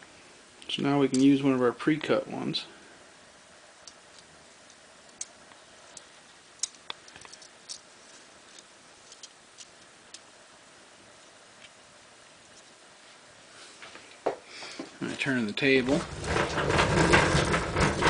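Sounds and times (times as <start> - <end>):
small parts and tools clicking: 3.8 - 10.3.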